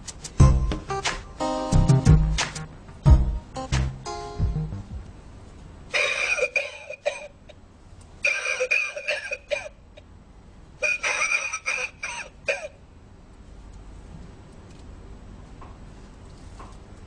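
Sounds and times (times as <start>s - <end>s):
recorded coughing from speaker: 5.9s - 7.4s, 8.2s - 9.8s, 10.8s - 12.8s.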